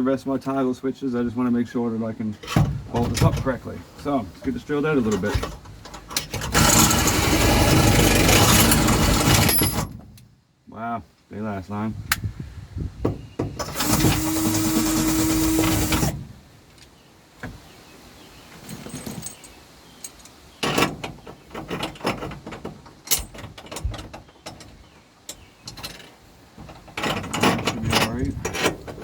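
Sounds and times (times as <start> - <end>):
parts clicking and rattling: 4.4 - 10.0, 18.6 - 29.0
power drill drilling: 6.5 - 9.8, 13.6 - 16.2.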